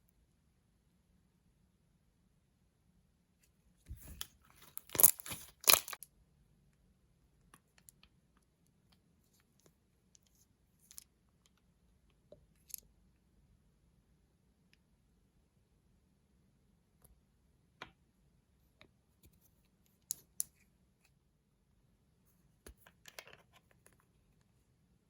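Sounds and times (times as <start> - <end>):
slime crackling and crunching: 4.7 - 6.0.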